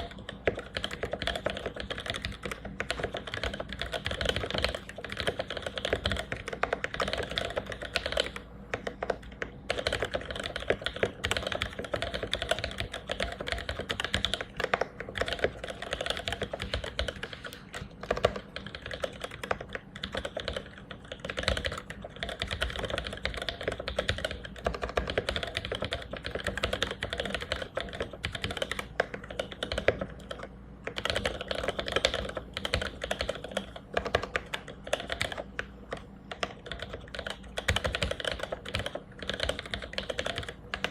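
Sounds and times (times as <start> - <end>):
fast typing on mechanical keyboard: 0.0 - 40.9.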